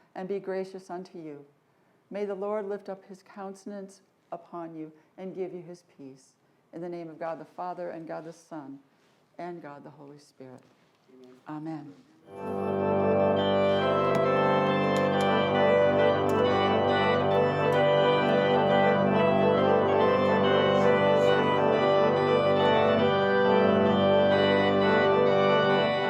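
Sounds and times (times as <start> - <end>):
organ playing chords: 12.3 - 26.0.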